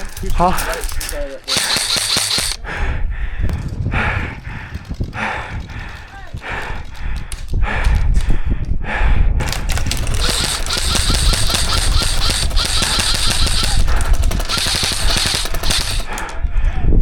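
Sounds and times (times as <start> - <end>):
airsoft guns firing full auto: 0.0 - 2.6, 4.7 - 8.3, 9.4 - 16.4.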